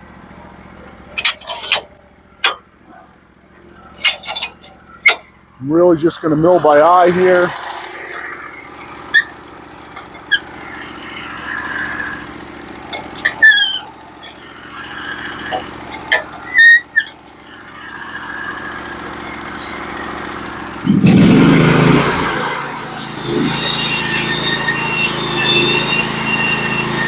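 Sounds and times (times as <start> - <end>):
engine idling: 0.0 - 27.0
short squeaks: 1.1 - 2.6, 3.8 - 5.4, 8.1 - 27.0
metal clanks: 1.1 - 2.7, 3.9 - 5.3
band saw cutting log: 4.0 - 27.0.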